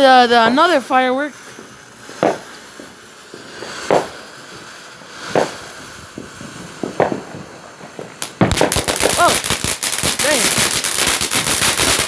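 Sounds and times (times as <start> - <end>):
fireworks popping: 0.0 - 12.0
steady hiss: 7.8 - 12.0.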